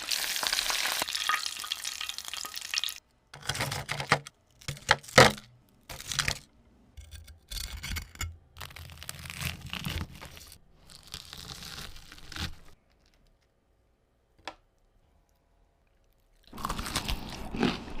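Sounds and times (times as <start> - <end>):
crisp chicken tearing and crunching: 8.6 - 13.4, 16.3 - 18.0.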